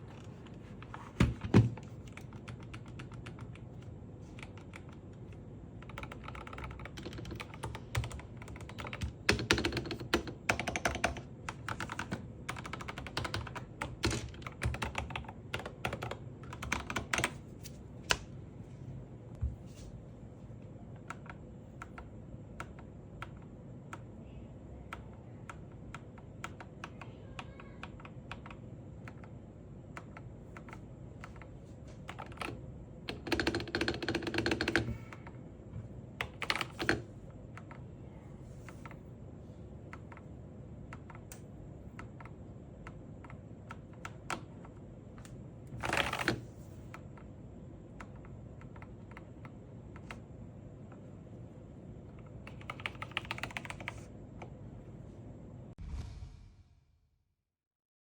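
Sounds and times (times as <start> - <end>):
mechanical keyboard keystroke clicks: 52.2 - 54.5.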